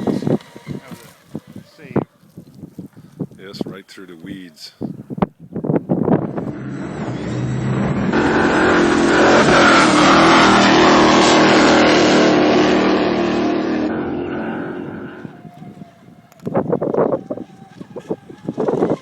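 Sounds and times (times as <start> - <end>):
electric motor whining: 0.0 - 2.3, 6.2 - 19.0.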